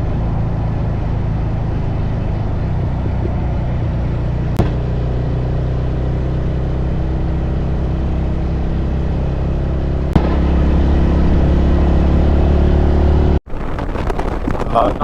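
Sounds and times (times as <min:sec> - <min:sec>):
motorcycle engine running: 0:00.0 - 0:13.2
wind and road noise: 0:00.0 - 0:15.0.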